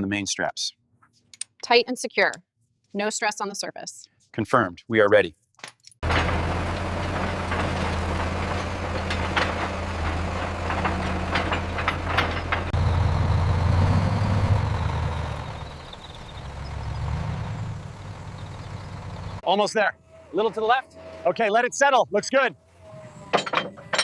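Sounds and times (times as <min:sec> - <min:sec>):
heavy engine humming: 0:06.0 - 0:19.4, 0:20.0 - 0:21.5.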